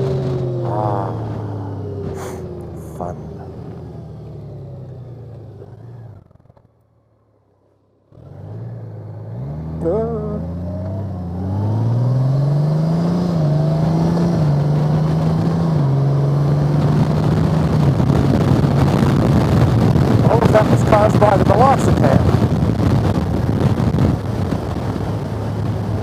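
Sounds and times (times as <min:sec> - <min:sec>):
motorcycle engine accelerating: 0:00.0 - 0:26.0
wind rush: 0:11.4 - 0:26.0.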